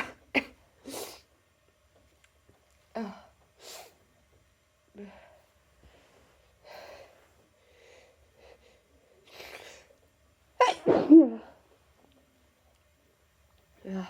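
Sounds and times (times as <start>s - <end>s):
person sneezing loudly: 10.6s - 11.4s.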